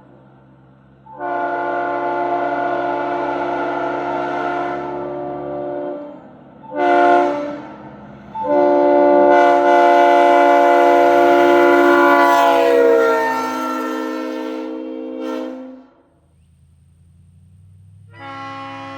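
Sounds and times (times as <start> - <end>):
locomotive air horn chord: 1.0 - 16.2, 18.0 - 18.9.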